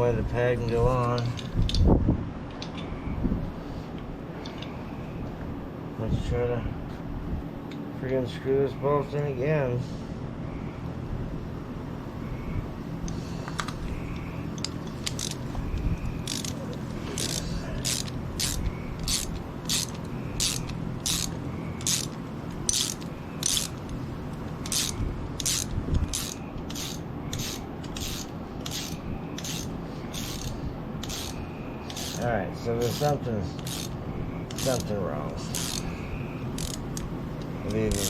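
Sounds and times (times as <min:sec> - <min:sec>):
ratchet wrench clicking: 0:13.1 - 0:38.0.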